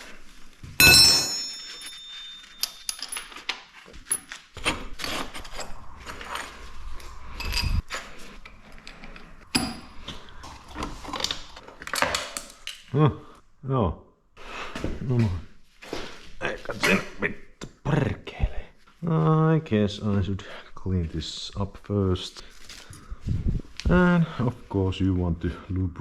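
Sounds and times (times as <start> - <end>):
ringing metal clang: 0.8 - 3.3
metal clanking: 0.8 - 3.4
low rumble: 4.8 - 10.7.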